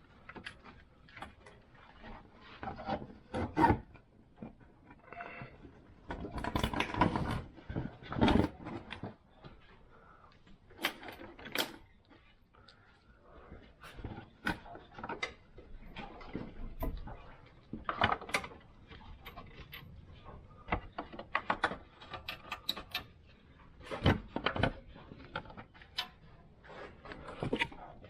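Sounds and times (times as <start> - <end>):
tools and metal parts clanking: 10.8 - 11.8.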